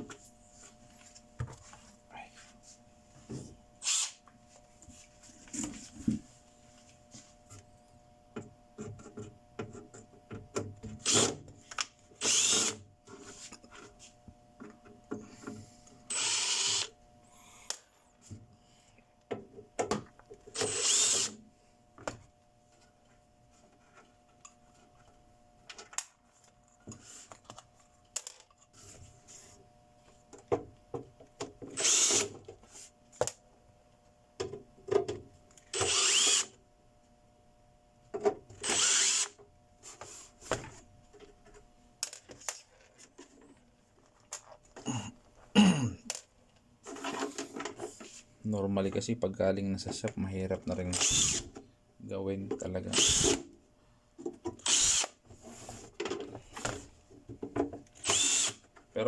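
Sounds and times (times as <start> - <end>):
power drill-driver bursts: 3.8 - 4.2, 11.0 - 11.4, 12.2 - 12.8, 16.1 - 17.0, 20.5 - 21.4, 31.8 - 32.4, 35.7 - 36.5, 38.6 - 39.4, 50.9 - 51.5, 52.9 - 53.4, 54.6 - 55.2, 58.0 - 58.6.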